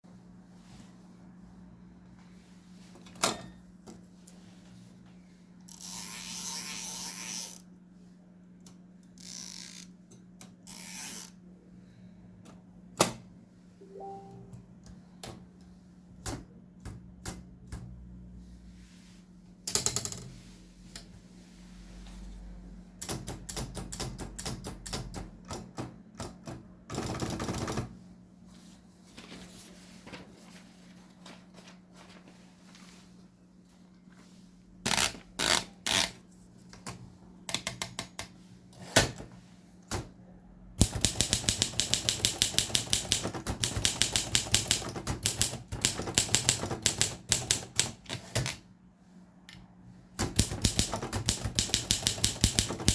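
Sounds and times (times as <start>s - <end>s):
typewriter clacks and keystrokes: 23.0s - 27.9s, 40.8s - 48.6s, 50.2s - 52.9s
rasping typewriter mechanism: 50.2s - 52.9s.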